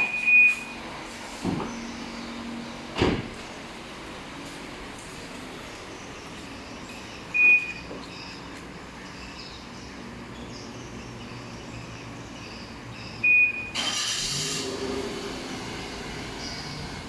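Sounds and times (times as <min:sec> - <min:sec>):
car alarm high beeps: 0:00.0 - 0:00.8, 0:07.3 - 0:07.9, 0:13.2 - 0:13.8.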